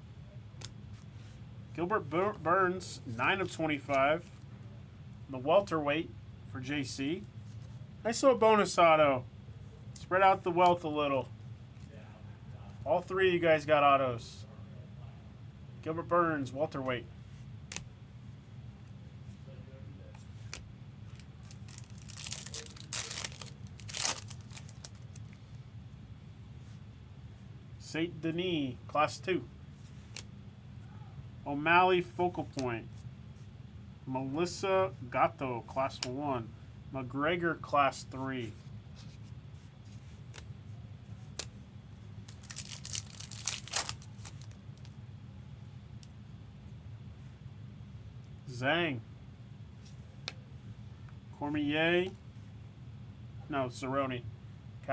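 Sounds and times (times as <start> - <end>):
low steady hum: 0.0 - 54.9
plastic wrapper crinkling and tearing: 21.1 - 25.4, 42.3 - 44.9.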